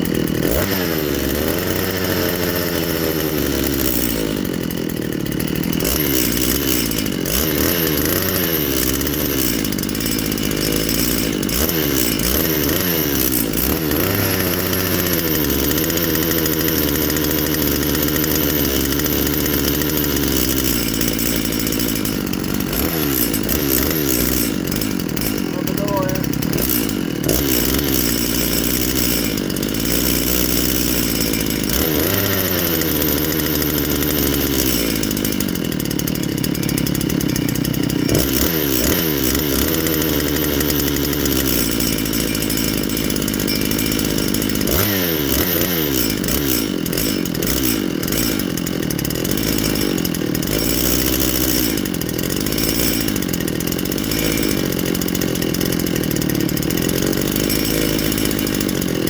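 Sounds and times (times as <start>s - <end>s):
chainsaw revving: 0.0s - 59.0s.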